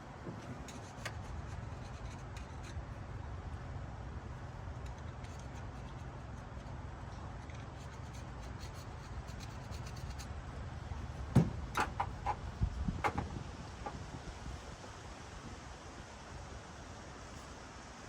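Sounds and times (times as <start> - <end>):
hands rubbing and scraping parts: 0.1 - 3.1, 4.3 - 14.1.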